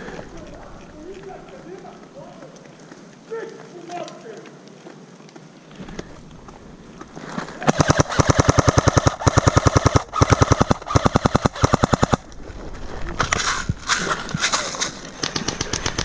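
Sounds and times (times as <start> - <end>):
airsoft gun firing bursts: 7.6 - 12.3, 14.4 - 16.0.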